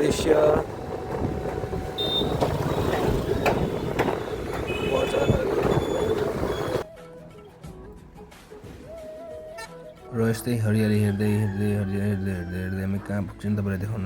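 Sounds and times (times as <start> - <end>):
road traffic passing: 0.0 - 6.8.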